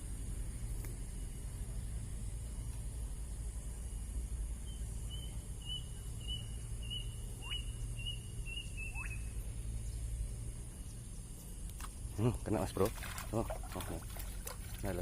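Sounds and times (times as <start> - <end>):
bird downward-sliding whistles: 6.3 - 9.3
bird calling short high notes: 8.5 - 9.3.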